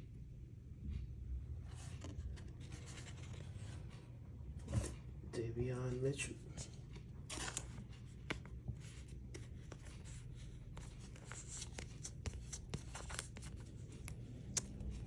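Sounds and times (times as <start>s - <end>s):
cards clicking: 10.7s - 15.0s.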